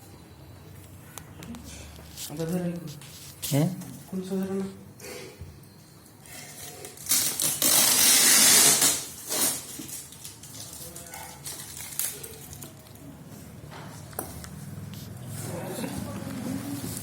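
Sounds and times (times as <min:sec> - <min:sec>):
packing material rustling: 0:06.4 - 0:13.0.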